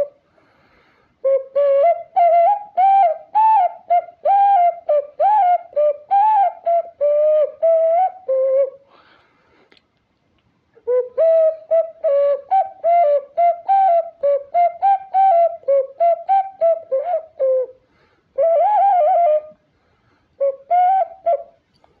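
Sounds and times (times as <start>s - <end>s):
ocarina melody: 1.2s - 8.8s, 10.9s - 17.8s, 18.4s - 19.6s, 20.4s - 21.6s.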